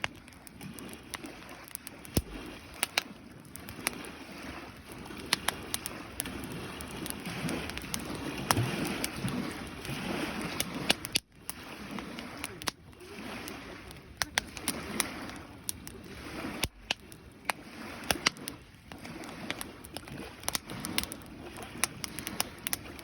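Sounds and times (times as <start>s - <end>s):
rush of flame: 0.0s - 13.8s
campfire crackling: 0.0s - 23.0s.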